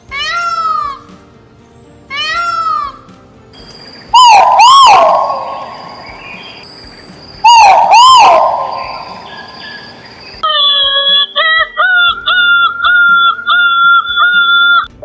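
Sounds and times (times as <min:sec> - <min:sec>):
bird calling: 0:03.6 - 0:14.9.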